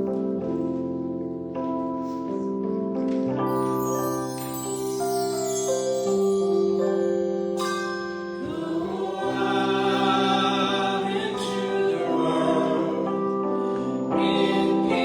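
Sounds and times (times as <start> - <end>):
instrumental accompaniment of held notes: 0.0 - 15.0
congregation singing a hymn: 8.4 - 15.0.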